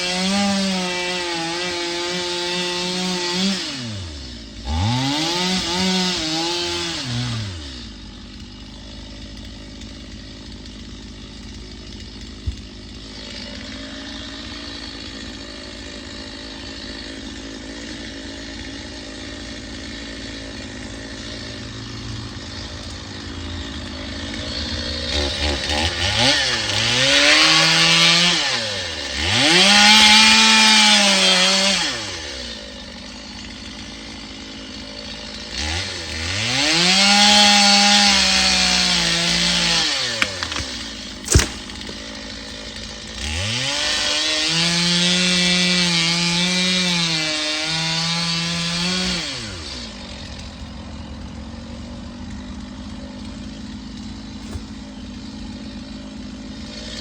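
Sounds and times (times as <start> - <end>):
chainsaw revving: 0.0 - 57.0.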